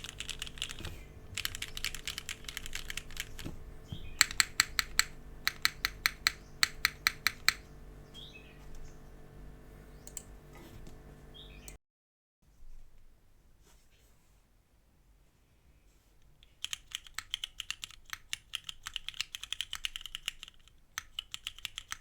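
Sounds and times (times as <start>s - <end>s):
mechanical keyboard typing: 0.0s - 7.6s, 16.4s - 22.0s.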